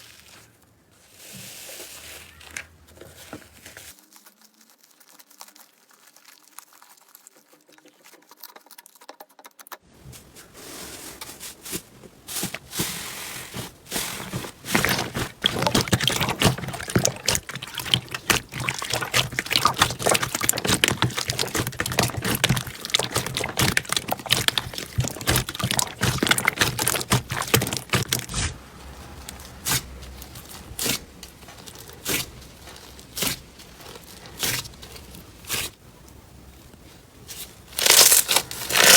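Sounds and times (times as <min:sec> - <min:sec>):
slime squelching and popping: 0:12.3 - 0:35.7, 0:37.7 - 0:38.9.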